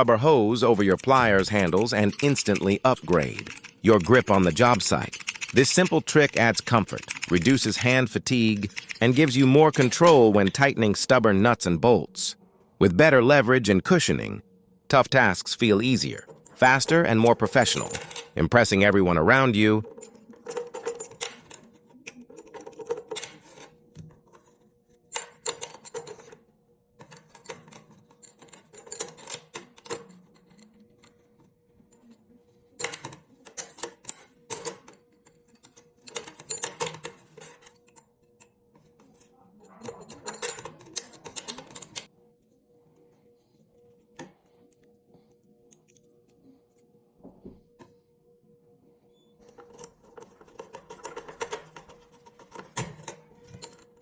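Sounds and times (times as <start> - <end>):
hard clicking and rattling: 0.8 - 10.6.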